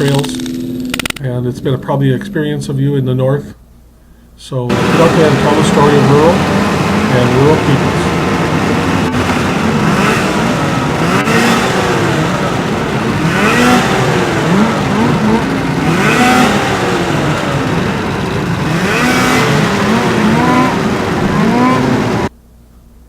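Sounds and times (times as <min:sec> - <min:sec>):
snowmobile engines revving: 0:04.6 - 0:22.3.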